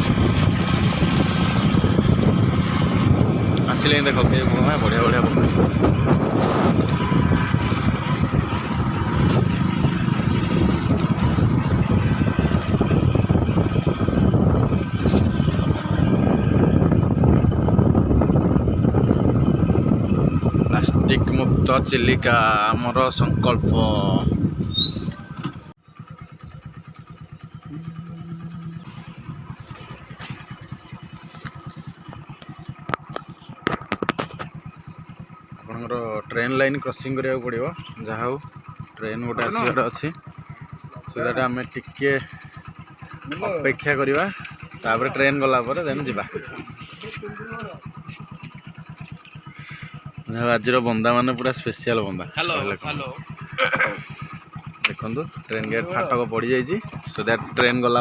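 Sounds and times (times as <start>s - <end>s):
motorcycle engine putter: 0.0s - 16.8s, 24.6s - 52.2s, 52.8s - 58.0s
vehicle rumble: 0.0s - 58.0s
steady low tone: 26.1s - 35.7s.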